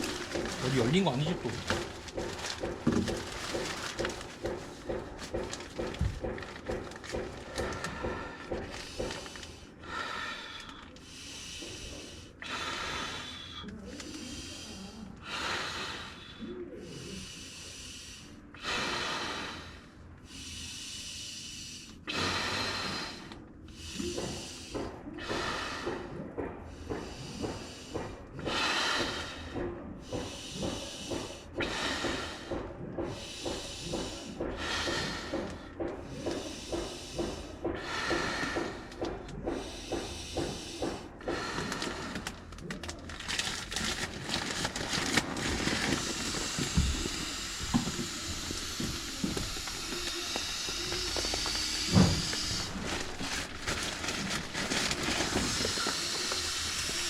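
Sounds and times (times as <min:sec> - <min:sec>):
person breathing in: 0:01.4 - 0:42.5, 0:44.8 - 0:57.0.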